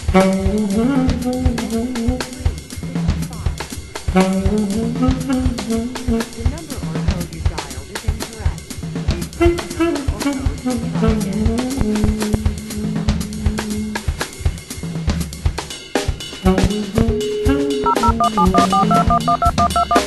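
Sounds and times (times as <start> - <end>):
drum kit beat: 5.8 - 9.8, 17.8 - 20.0
saxophone melody: 17.5 - 20.0.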